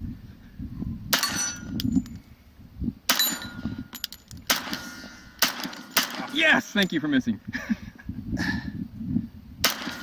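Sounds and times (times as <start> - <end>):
steel plates ringing: 1.2 - 2.2
gunshots: 4.5 - 6.5, 9.6 - 10.0.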